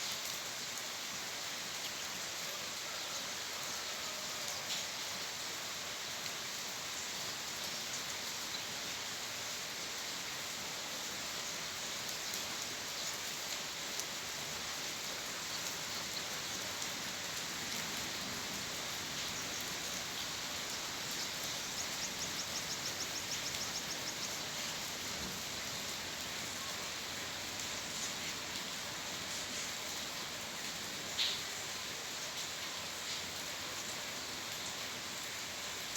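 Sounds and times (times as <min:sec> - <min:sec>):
steady rain hiss: 0:00.0 - 0:35.9
rain drops ticking: 0:10.4 - 0:35.9.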